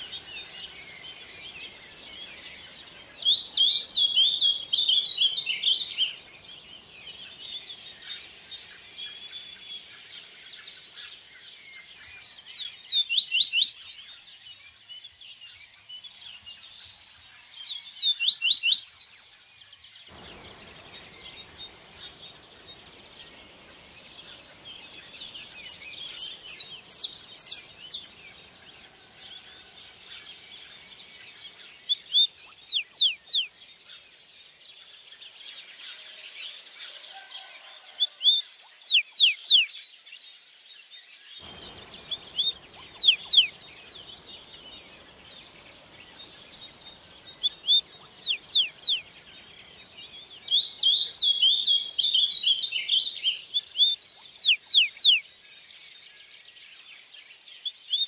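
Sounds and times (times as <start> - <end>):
songbirds singing: 0.0 - 58.0
stream flowing: 41.4 - 55.2.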